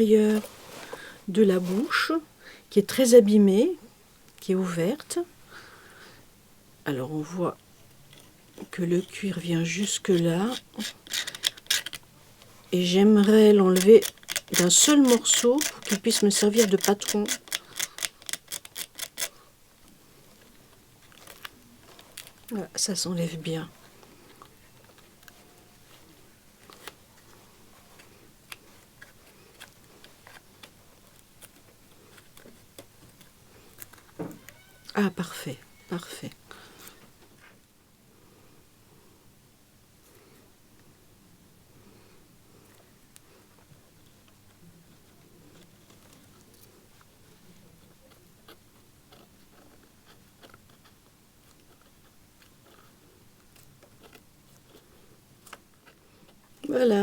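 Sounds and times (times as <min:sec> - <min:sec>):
brittle leather peeling clicks: 0:13.7 - 0:19.3
small clicks of handwork: 0:13.7 - 0:22.5, 0:47.8 - 0:56.6.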